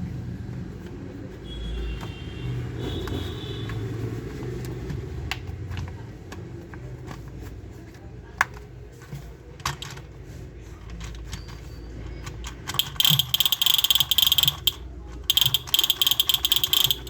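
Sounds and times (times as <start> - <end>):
toy gun gear rattling: 12.2 - 17.0
toy gun light clicks: 12.8 - 17.0.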